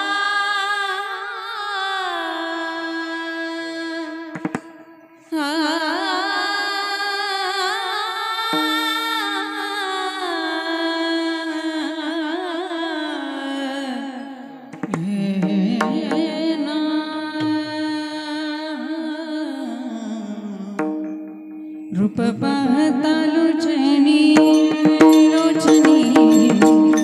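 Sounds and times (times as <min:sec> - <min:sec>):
person singing devotional song: 0:00.0 - 0:27.0
clicks: 0:14.7 - 0:16.2.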